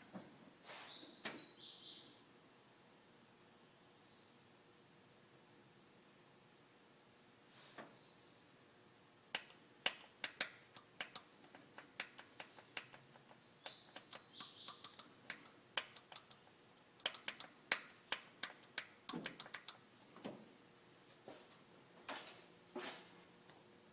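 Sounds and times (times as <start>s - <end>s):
sharp clicks and taps: 9.3s - 19.8s.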